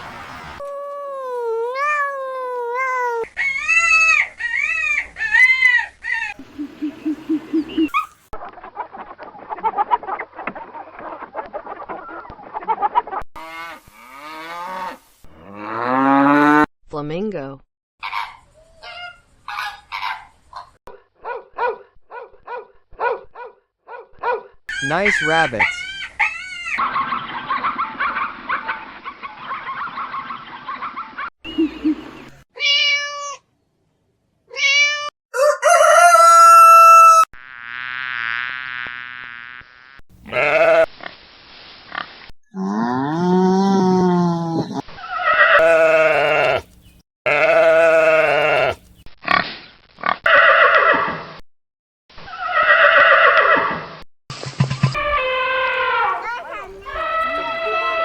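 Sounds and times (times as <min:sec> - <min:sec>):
chatter of small animal calls: 0:02.8 - 0:08.2, 0:55.0 - 0:58.0
drawn-out pitched animal calls: 0:03.6 - 0:08.3, 0:40.3 - 0:40.9, 0:45.2 - 0:46.7, 0:47.3 - 0:48.8, 0:55.0 - 0:58.0
birds clucking and chattering: 0:05.9 - 0:13.2, 0:24.9 - 0:32.4, 0:55.0 - 0:58.0.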